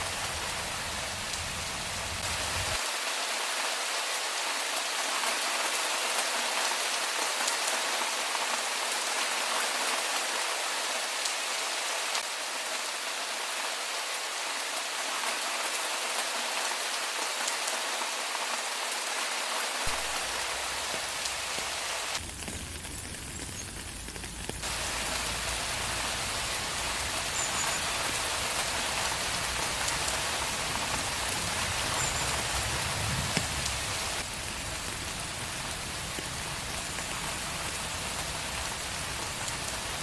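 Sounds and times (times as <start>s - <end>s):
steady rain hiss: 0.0s - 40.0s
faint raindrop ticks: 22.2s - 24.6s, 31.9s - 33.8s.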